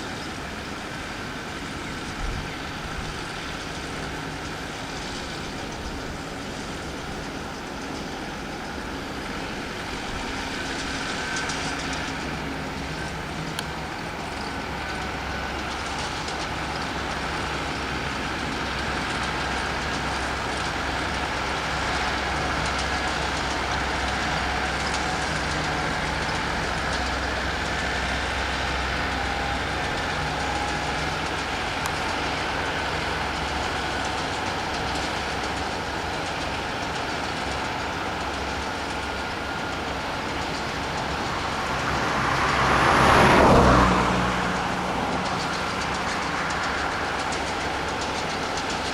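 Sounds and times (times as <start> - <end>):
vehicle engines rumbling: 0.0 - 48.9
vehicle passing close by: 41.0 - 47.3.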